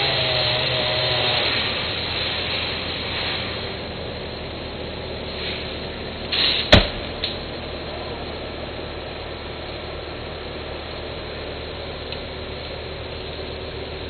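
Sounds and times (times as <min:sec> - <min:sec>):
engine drone: 0:00.0 - 0:14.0
tree trunk crashing down: 0:06.6 - 0:07.4.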